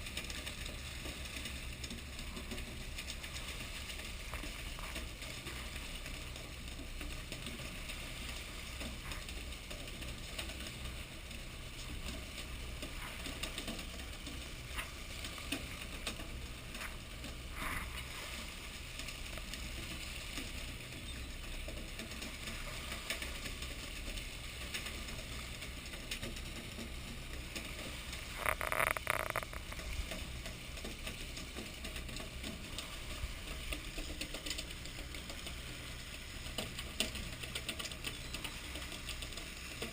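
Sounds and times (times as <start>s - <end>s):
boat engine running: 0.0s - 39.9s.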